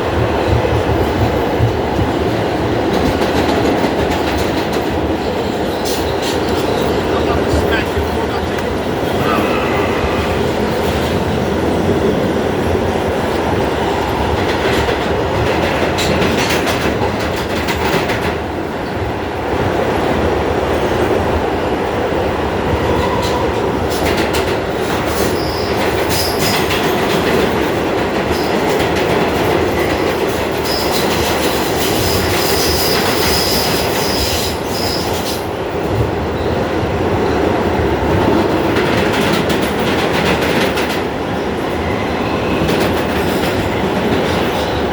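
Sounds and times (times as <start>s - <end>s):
wheels clacking over rail joints: 0.0s - 19.1s, 20.2s - 44.9s
subway train rumble: 0.0s - 44.9s
high wheel squeal: 25.2s - 26.5s, 31.8s - 35.4s.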